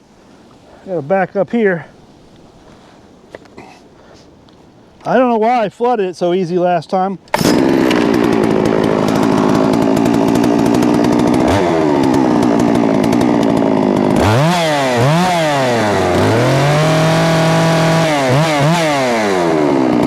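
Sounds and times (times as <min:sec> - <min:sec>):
chainsaw engine revving: 0:07.3 - 0:20.0.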